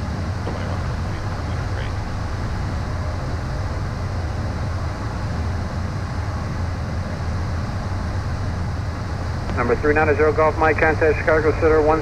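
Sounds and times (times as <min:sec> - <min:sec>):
low jet drone: 0:00.0 - 0:12.0.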